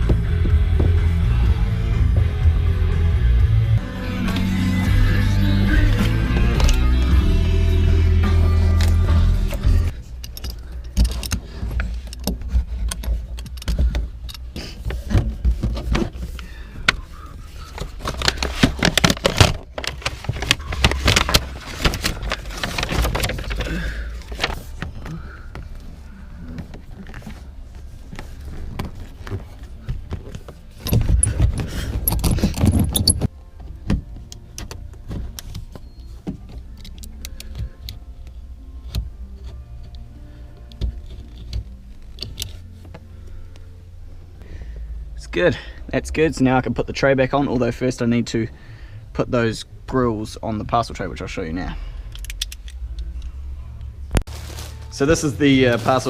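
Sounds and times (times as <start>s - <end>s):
low bass hum: 0.0s - 47.2s, 51.8s - 56.0s
metal hardware jangling and clicking: 10.1s - 14.6s, 30.8s - 33.3s.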